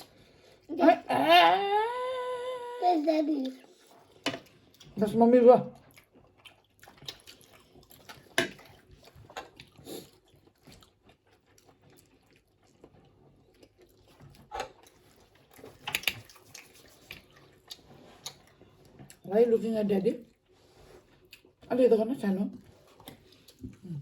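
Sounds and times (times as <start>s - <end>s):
person chewing noodles: 3.4s - 5.0s, 5.8s - 19.2s, 20.3s - 21.6s, 22.7s - 24.0s.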